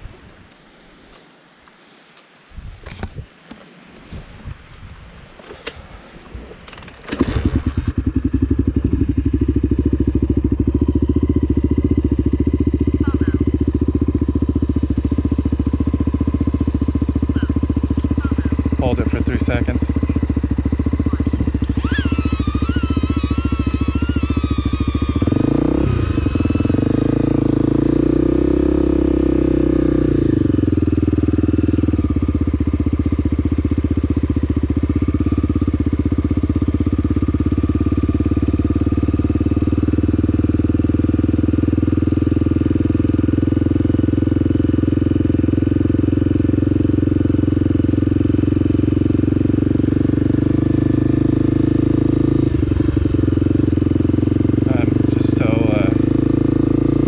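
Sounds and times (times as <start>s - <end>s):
motorcycle engine revving: 6.8s - 57.0s
high wavering whine: 15.2s - 27.8s.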